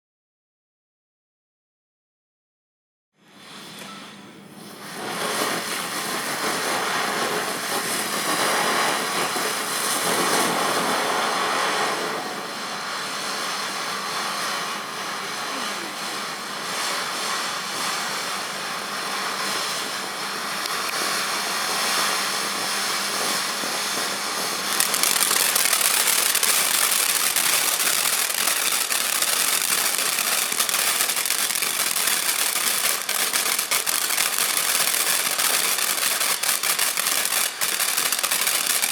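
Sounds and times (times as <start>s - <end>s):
firework fountain hissing: 3.2s - 3.7s, 4.4s - 38.9s
fine crackling: 24.6s - 38.9s.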